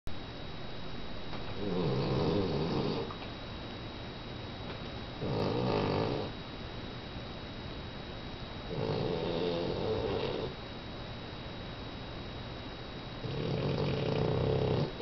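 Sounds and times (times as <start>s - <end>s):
dog snoring loudly: 1.6s - 3.1s, 5.2s - 6.3s, 8.7s - 10.6s, 13.2s - 15.0s.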